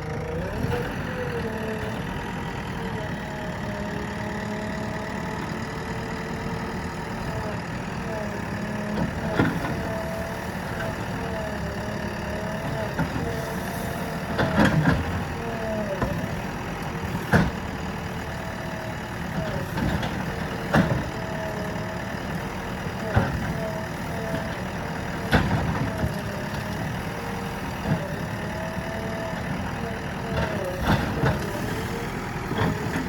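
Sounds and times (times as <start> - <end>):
diesel engine running under work: 0.0 - 33.0.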